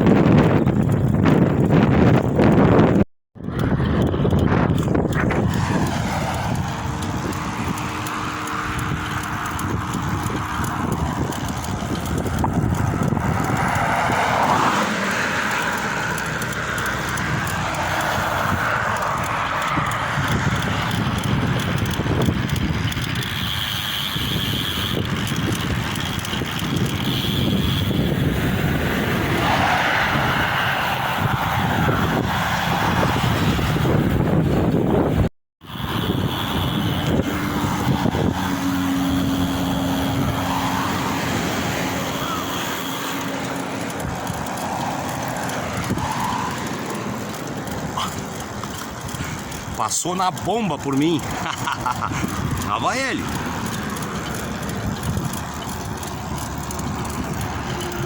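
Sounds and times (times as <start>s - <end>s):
wind buffeting microphone: 0.0s - 58.0s.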